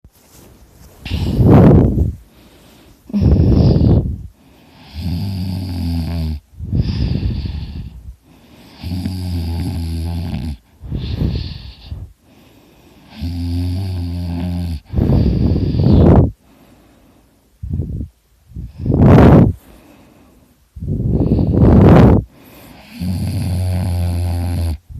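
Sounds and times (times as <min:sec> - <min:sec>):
man snoring heavily: 0:03.1 - 0:04.1, 0:04.7 - 0:08.0, 0:08.6 - 0:12.0, 0:13.1 - 0:16.2, 0:21.1 - 0:24.9.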